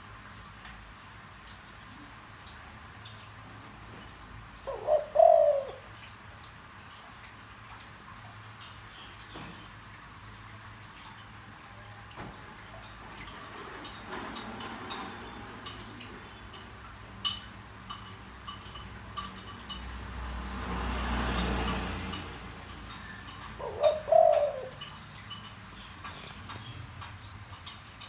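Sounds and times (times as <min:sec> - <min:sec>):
dove cooing: 0:04.6 - 0:06.1, 0:21.4 - 0:25.4.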